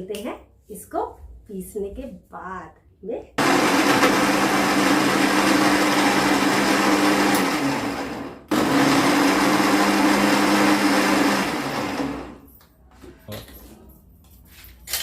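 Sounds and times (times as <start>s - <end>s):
mixer grinder motor running: 3.4s - 12.4s.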